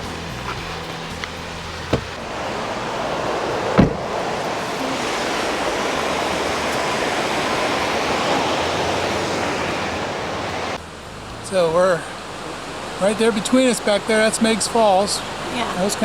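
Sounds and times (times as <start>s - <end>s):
waterfall rushing: 0.0s - 16.0s
loud thump: 1.9s - 2.3s, 3.7s - 4.2s.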